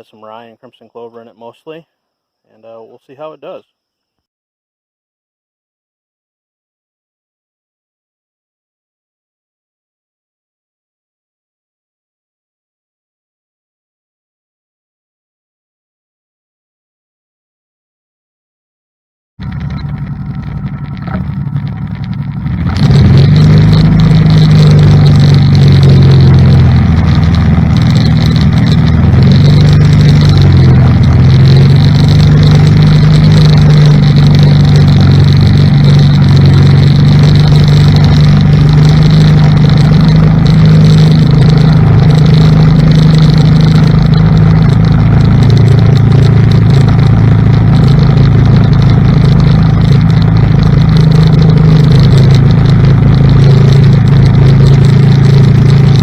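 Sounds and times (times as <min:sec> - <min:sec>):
atv engine running under load: 0:19.4 - 0:56.0.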